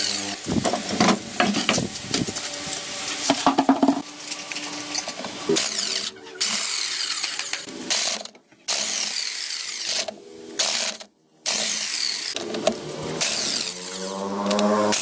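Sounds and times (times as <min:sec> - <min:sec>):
power tool running in bursts: 0:08.8 - 0:15.0.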